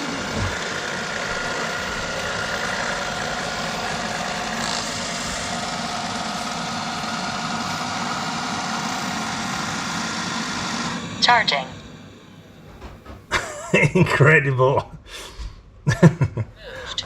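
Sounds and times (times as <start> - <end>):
robot vacuum motor hum: 0.0 - 13.1.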